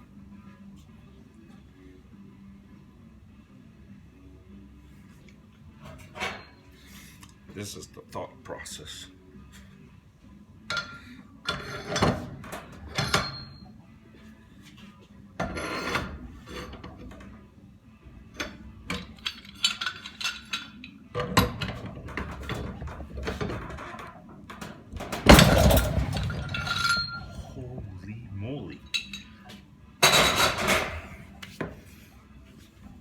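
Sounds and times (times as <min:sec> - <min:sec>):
loud metal clatter: 0:24.6 - 0:27.6
metallic tool clanks and knocks: 0:24.6 - 0:27.6.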